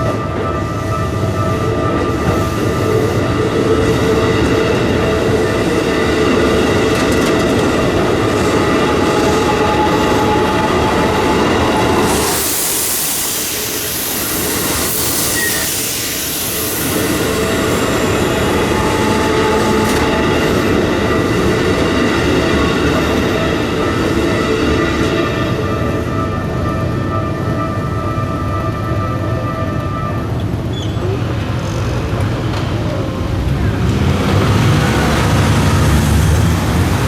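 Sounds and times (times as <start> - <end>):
train rumble: 0.0 - 37.0
train wheels clattering on rails: 1.9 - 25.0
high hiss: 11.9 - 18.2.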